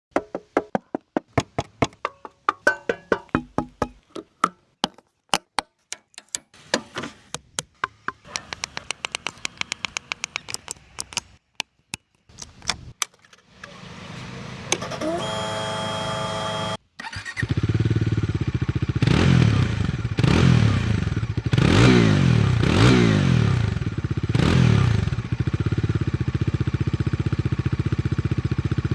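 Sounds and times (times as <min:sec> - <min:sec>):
motorcycle engine idling and revving: 0:13.4 - 0:28.9.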